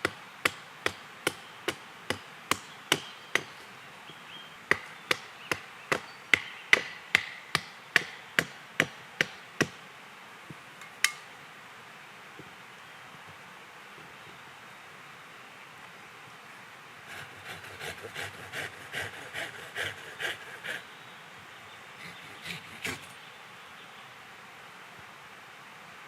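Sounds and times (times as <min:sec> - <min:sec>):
axe chopping wood: 0:00.0 - 0:03.5, 0:04.7 - 0:09.8.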